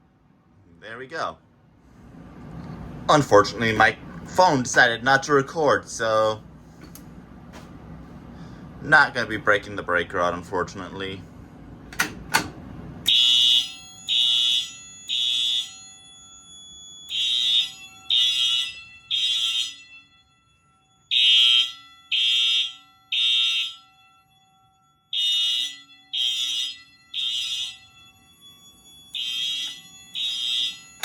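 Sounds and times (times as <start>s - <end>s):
fire alarm beeping: 13.0s - 31.0s.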